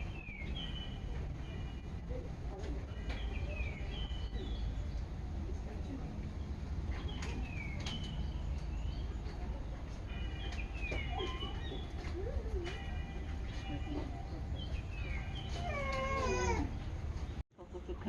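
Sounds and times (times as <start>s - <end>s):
animal chirps and cries: 10.8s - 12.7s, 14.6s - 16.8s
meow-like animal cry: 15.6s - 16.7s.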